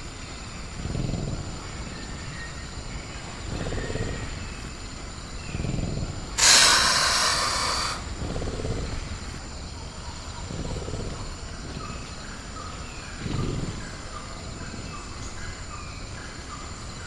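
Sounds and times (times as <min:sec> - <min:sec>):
creature low rumbling breaths: 0:00.0 - 0:17.0
creature loud hiss: 0:06.4 - 0:08.1.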